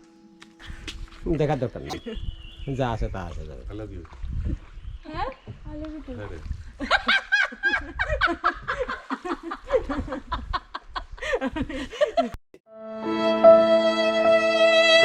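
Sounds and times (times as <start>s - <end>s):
people talking: 1.3s - 2.2s
people laughing: 6.8s - 12.4s
music with held string notes: 12.7s - 15.0s.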